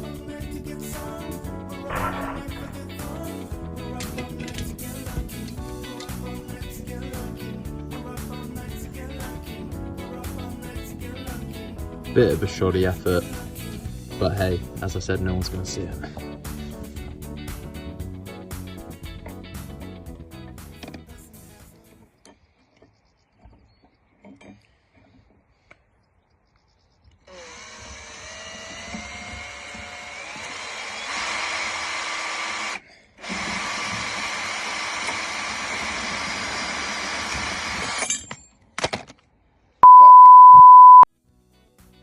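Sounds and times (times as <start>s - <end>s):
power tool motor spinning: 27.3s - 38.0s
loud steady beep tone: 39.8s - 41.1s.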